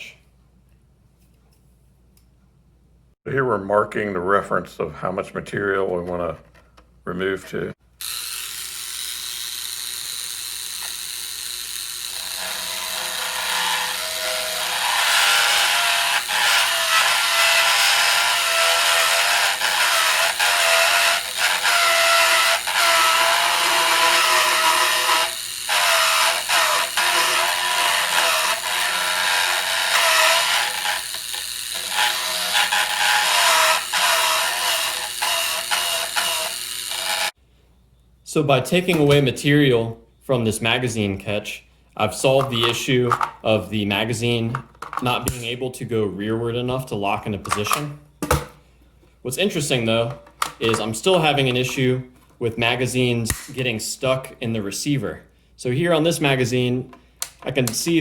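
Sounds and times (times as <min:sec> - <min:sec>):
rotary tool grinding steel: 0:08.0 - 0:37.4.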